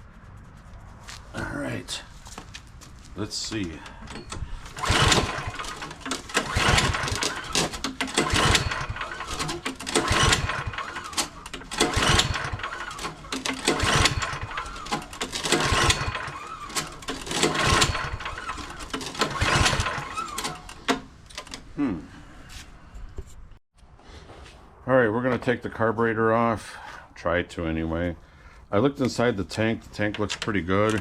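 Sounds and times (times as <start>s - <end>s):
engine cranking without starting: 3.5s - 21.8s, 29.6s - 31.0s.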